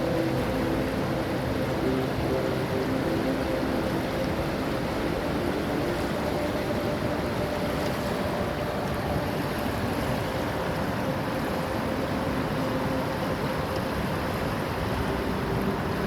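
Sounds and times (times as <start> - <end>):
fast-flowing water rushing: 0.0 - 16.0.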